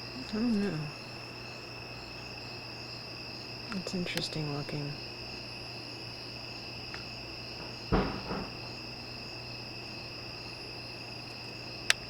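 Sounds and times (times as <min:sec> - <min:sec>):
crickets trilling: 0:00.0 - 0:12.0
brief knock: 0:07.6 - 0:08.6.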